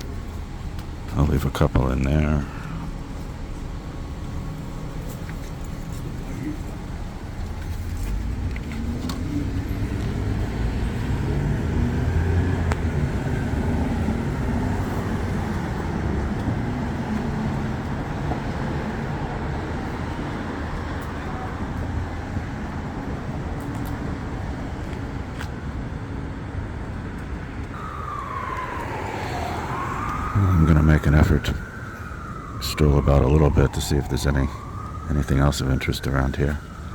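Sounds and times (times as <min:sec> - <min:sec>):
rumble of street traffic: 0:00.0 - 0:36.9.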